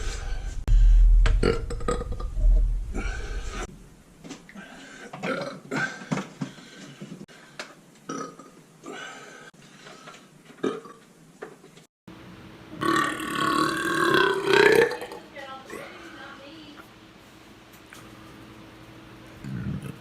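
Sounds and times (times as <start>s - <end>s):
man burping: 5.2s - 6.0s, 8.1s - 9.1s, 10.6s - 11.0s, 12.8s - 15.2s.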